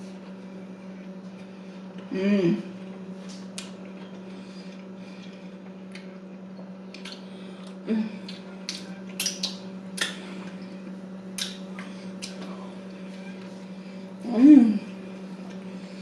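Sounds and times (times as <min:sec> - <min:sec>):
chewing with wet mouth clicks: 0:03.5 - 0:06.2, 0:06.9 - 0:10.2, 0:11.3 - 0:12.5.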